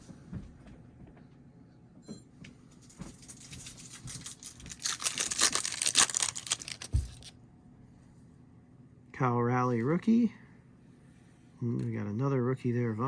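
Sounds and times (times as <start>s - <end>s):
foil wrapper tearing and crinkling: 3.2s - 7.3s.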